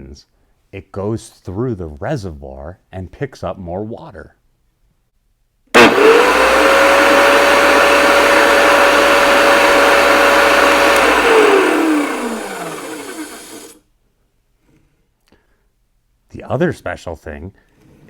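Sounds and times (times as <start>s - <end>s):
wet saw motor whining: 5.8s - 13.8s.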